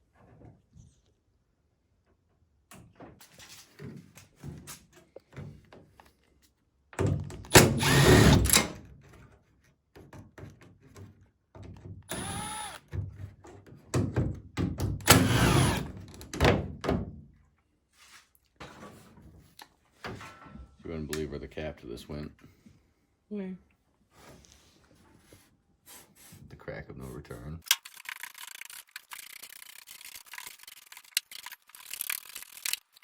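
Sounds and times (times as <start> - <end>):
clatter of tools: 27.6 - 33.0.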